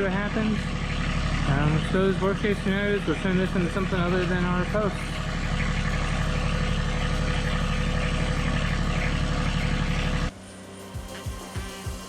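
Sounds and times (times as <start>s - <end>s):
sawmill cutting: 0.0s - 12.0s
background music: 8.6s - 12.0s.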